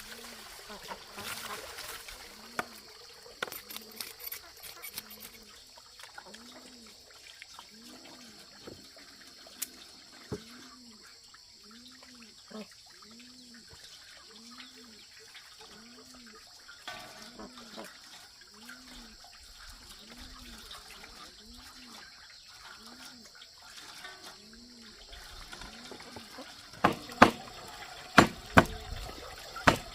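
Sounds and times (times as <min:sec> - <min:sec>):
low animal call: 0:04.8 - 0:09.2.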